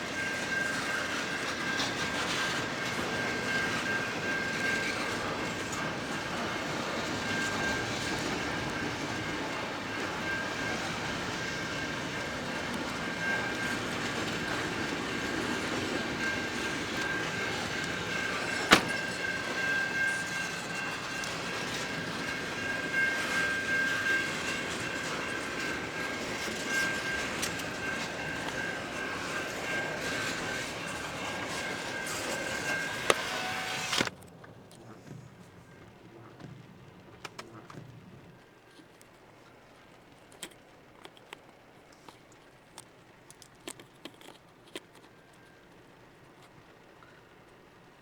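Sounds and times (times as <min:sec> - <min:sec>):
train wheels rolling on rail: 0:00.0 - 0:48.0
high-pitched ring: 0:16.0 - 0:33.8
sharp metal clank: 0:18.6 - 0:19.2.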